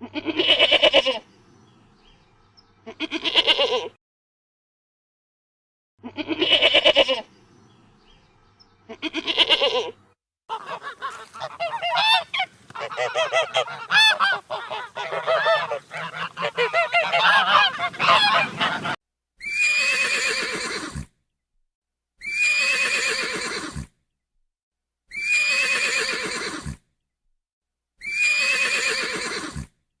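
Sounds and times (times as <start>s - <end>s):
animal bleats: 0.0s - 1.2s, 2.8s - 4.0s, 6.0s - 7.3s, 8.9s - 21.0s
geese honking: 10.5s - 19.0s.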